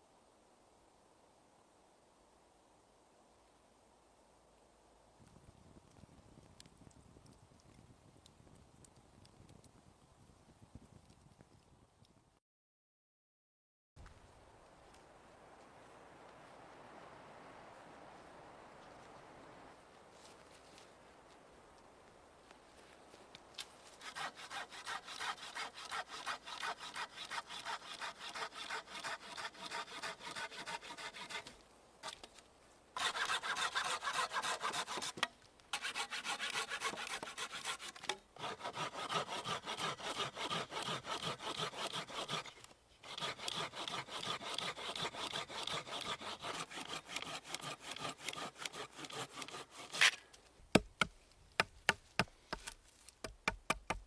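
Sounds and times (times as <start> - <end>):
hand saw cutting wood: 24.0 - 32.3, 33.0 - 54.0.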